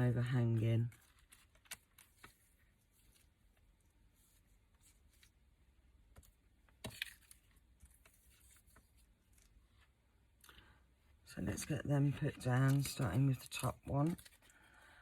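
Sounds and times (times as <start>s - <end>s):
paper rustling and clicks: 0.9s - 3.2s, 6.1s - 9.6s, 11.6s - 14.6s.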